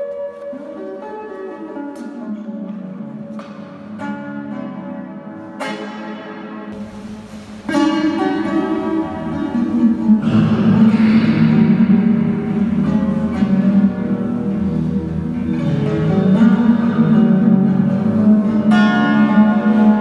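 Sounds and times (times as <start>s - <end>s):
plucked string melody: 6.8s - 20.0s.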